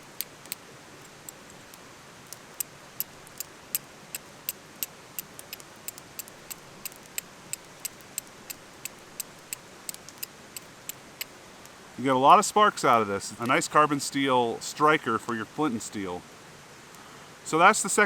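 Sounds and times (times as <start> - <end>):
steel striker clicking on flint: 0.0 - 11.8.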